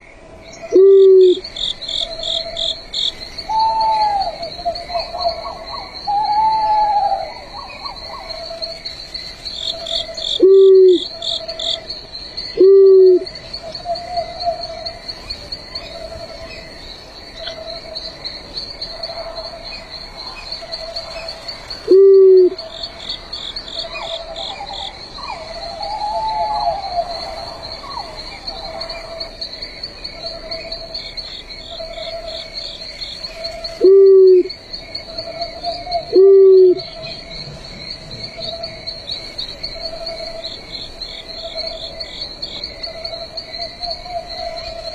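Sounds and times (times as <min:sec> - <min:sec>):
crickets chirping: 0:00.0 - 0:44.9
insect pulsing call: 0:00.0 - 0:44.9
owl hooting: 0:00.6 - 0:02.8, 0:03.4 - 0:08.8, 0:09.7 - 0:11.9, 0:12.5 - 0:14.8, 0:21.8 - 0:22.7, 0:23.8 - 0:29.2, 0:33.4 - 0:34.5, 0:35.2 - 0:37.6.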